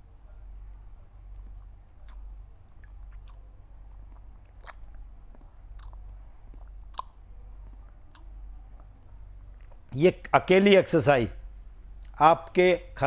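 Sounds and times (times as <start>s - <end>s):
low steady hum: 0.0s - 13.0s
wet lapping slurps: 2.0s - 8.3s.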